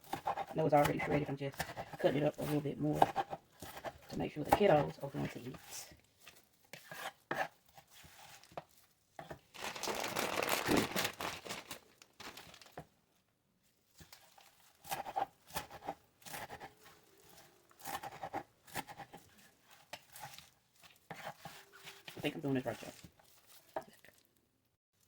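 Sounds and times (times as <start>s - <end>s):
food packaging crinkling and tearing: 8.2s - 13.0s, 22.8s - 24.4s.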